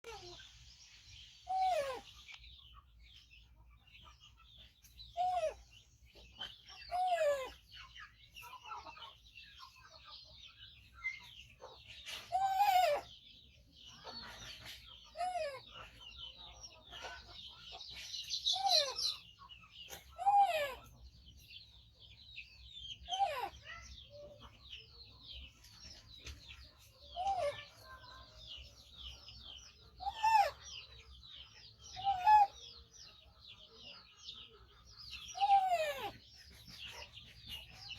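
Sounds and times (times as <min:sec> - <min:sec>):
small birds chirping: 0:00.0 - 0:37.9
baby monkey calling: 0:01.4 - 0:02.3, 0:05.1 - 0:05.6, 0:06.7 - 0:07.6, 0:12.2 - 0:13.2, 0:18.2 - 0:19.2, 0:19.9 - 0:20.9, 0:23.0 - 0:24.1, 0:27.1 - 0:28.6, 0:30.0 - 0:30.8, 0:31.8 - 0:32.8, 0:35.2 - 0:36.2.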